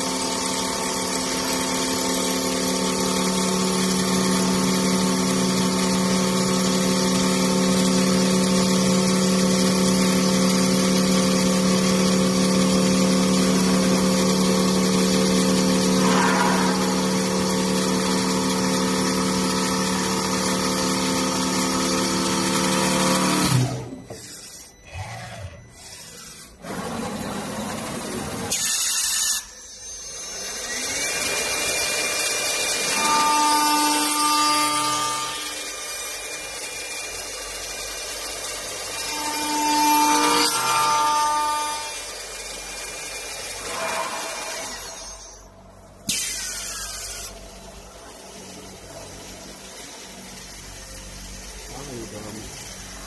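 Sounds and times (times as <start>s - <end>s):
router machining wood: 0.0s - 53.0s
steady tone: 15.7s - 18.5s, 43.6s - 46.1s
short burst of noise: 15.9s - 17.8s.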